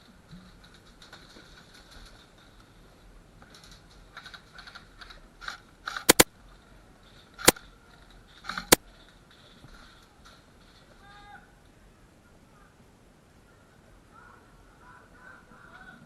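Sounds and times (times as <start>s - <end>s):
airsoft gun shots: 6.1s - 6.3s
ticking: 6.1s - 6.3s.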